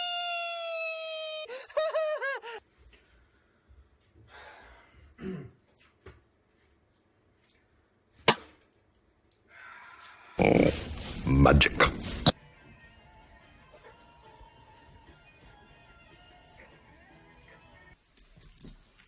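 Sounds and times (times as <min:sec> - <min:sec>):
long wailing cry: 0:00.0 - 0:02.6.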